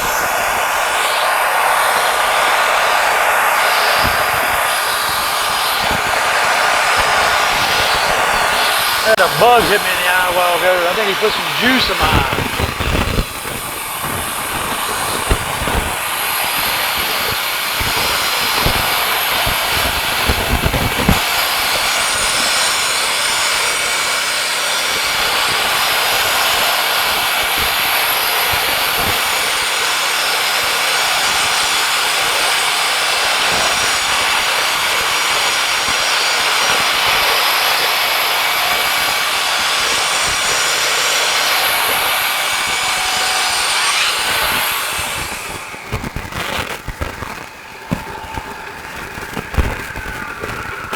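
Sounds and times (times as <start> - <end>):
band saw blade cutting wood: 0.0 - 49.4.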